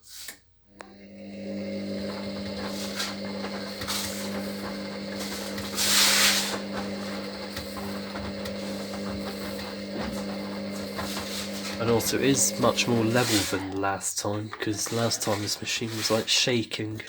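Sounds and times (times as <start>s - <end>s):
washer drum motor humming: 0.7s - 17.0s
drum rubbing swish: 2.6s - 13.6s.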